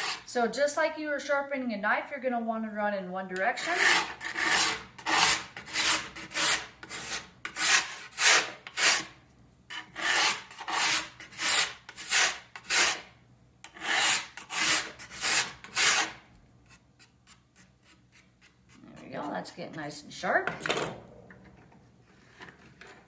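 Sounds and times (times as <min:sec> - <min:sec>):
sharpening stone scraping steel edge: 0:03.8 - 0:09.1, 0:09.7 - 0:13.0, 0:13.7 - 0:16.2.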